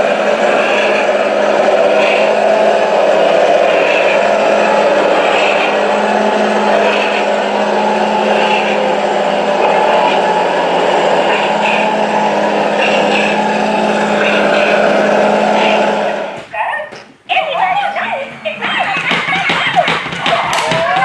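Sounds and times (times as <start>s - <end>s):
motor humming and whirring: 0.0s - 16.4s.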